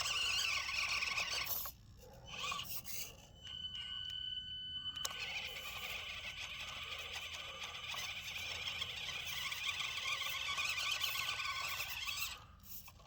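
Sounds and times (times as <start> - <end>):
small electric motor whining: 0.0 - 13.0.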